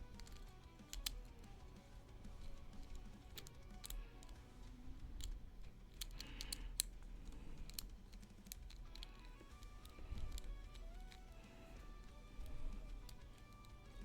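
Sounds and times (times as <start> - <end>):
faint background music: 0.0 - 14.0
lock pick clicking in lock: 0.1 - 1.3, 2.4 - 4.4, 5.2 - 11.4, 12.4 - 14.0.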